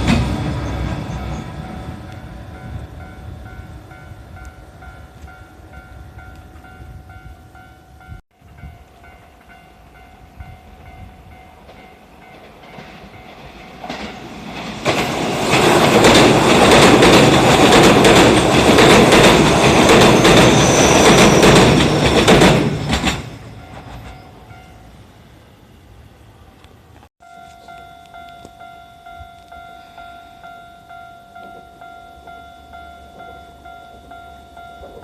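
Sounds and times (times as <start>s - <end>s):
tram wheels clacking over rail joints: 0.0s - 4.5s, 11.3s - 24.8s, 31.4s - 35.0s
level crossing bell ringing: 27.2s - 35.0s.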